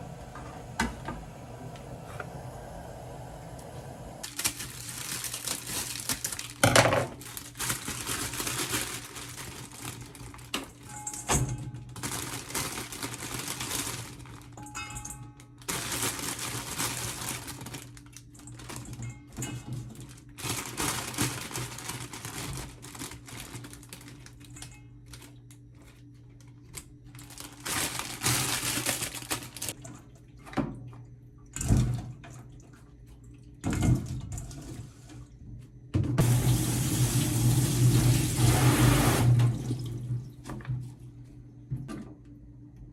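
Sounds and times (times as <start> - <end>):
low hum: 0.0 - 4.2
utensils and dishes clinking: 14.6 - 15.8
running water: 36.2 - 40.2.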